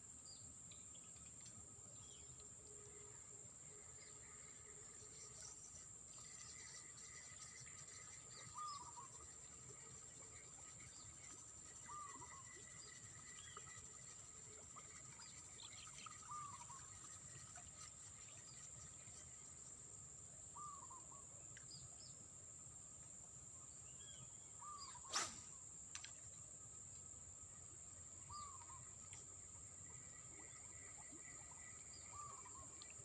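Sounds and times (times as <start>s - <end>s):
bird chirping: 3.8s - 19.5s, 28.2s - 29.0s, 29.6s - 33.0s.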